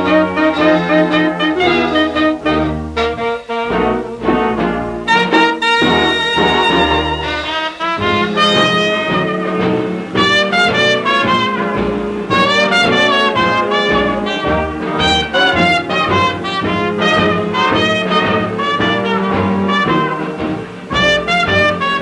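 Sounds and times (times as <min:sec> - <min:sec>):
swing dance band playing: 0:00.0 - 0:22.0.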